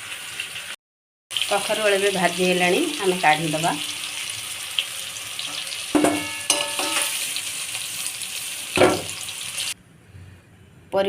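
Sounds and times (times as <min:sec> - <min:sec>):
vegetables sizzling in hot oil: 0:00.0 - 0:09.8
spatula knocking and scraping pan: 0:05.5 - 0:07.3, 0:08.8 - 0:09.2.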